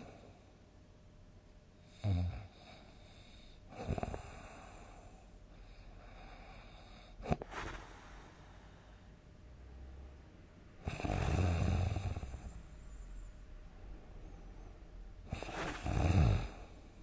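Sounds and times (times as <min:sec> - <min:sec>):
person snoring: 0:10.8 - 0:12.6, 0:15.3 - 0:16.8.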